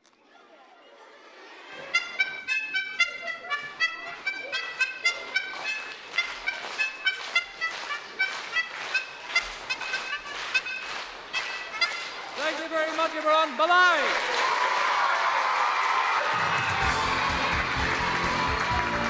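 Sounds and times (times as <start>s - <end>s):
lively tune of bright short notes: 2.0s - 12.2s.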